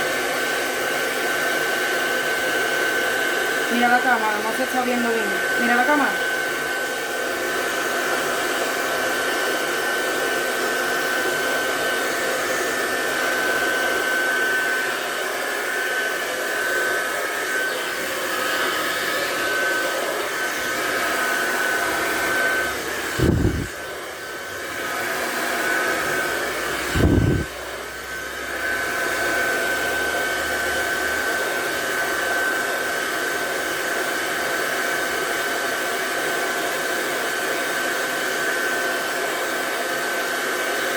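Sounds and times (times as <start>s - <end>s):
hair dryer running: 0.0s - 40.9s
low thumps: 23.1s - 23.8s, 26.9s - 27.5s.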